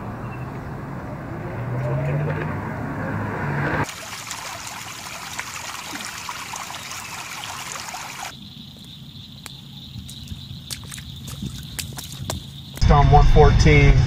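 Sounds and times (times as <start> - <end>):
running and trickling water: 3.8 - 8.4, 10.0 - 12.6.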